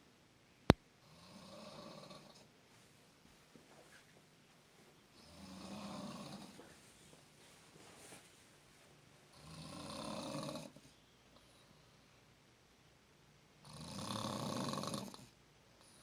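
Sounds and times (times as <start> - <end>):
person snoring: 1.1 - 2.4, 5.2 - 6.6, 9.4 - 10.8, 13.7 - 15.3.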